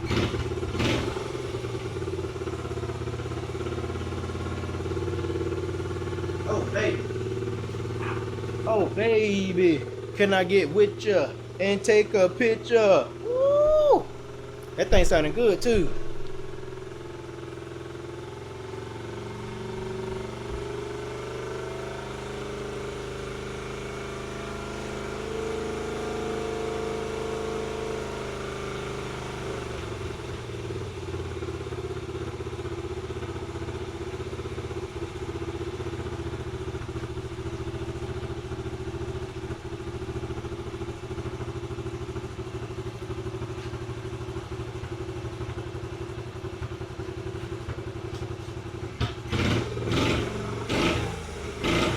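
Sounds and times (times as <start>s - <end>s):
small motorcycle engine running: 0.0s - 51.9s.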